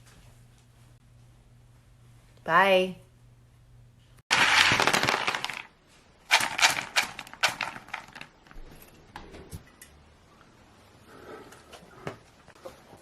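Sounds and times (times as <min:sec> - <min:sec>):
small hard objects clattering: 0:04.3 - 0:08.7.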